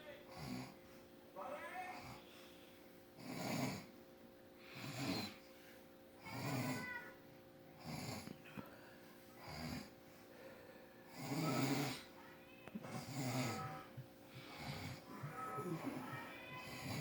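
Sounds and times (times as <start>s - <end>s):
man snoring: 3.2s - 3.9s, 4.7s - 5.4s, 6.2s - 6.8s, 7.8s - 8.3s, 11.1s - 12.1s, 13.0s - 13.8s, 16.6s - 17.0s.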